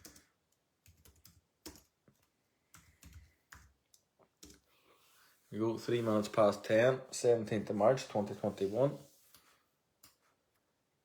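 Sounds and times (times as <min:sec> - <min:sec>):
faint keyboard typing: 0:00.0 - 0:04.8.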